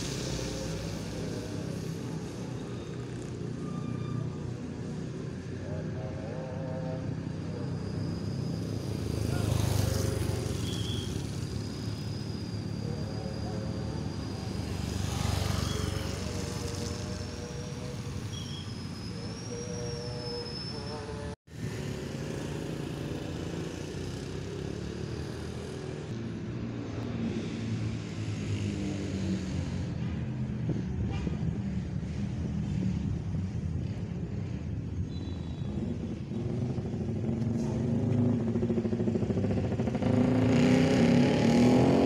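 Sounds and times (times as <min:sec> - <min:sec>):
low rumble of vehicle engines: 0:00.0 - 0:42.0
thin high whistle-like tone: 0:07.3 - 0:21.3, 0:35.0 - 0:35.8.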